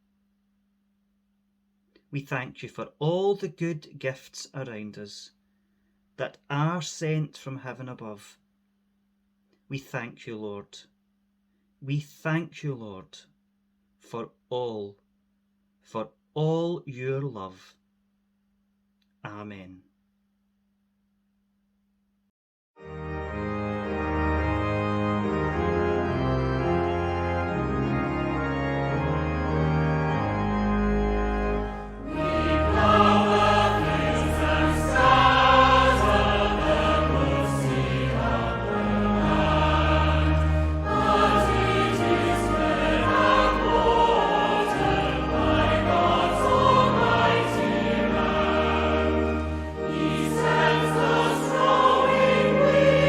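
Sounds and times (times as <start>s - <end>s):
organ playing sustained chords: 22.8s - 53.0s
choir singing a hymn: 30.2s - 53.0s.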